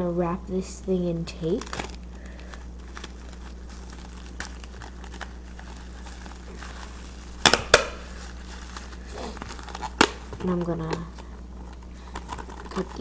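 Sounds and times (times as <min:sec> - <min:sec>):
plastic bag crinkling: 0:01.3 - 0:13.0.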